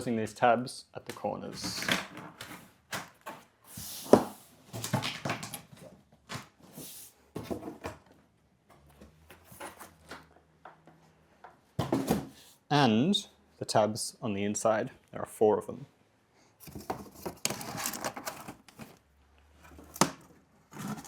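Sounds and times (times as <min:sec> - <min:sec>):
cardboard creasing and rustling: 0:01.4 - 0:10.3, 0:16.6 - 0:21.0.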